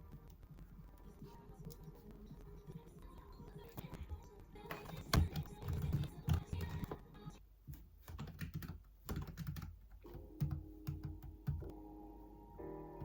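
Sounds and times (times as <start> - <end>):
soft background music: 10.0 - 13.0.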